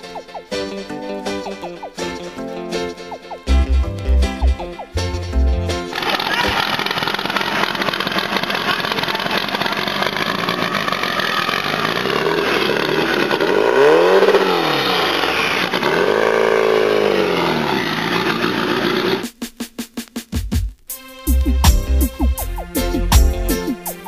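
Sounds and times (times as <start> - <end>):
vehicle engine revving: 4.5 - 19.3.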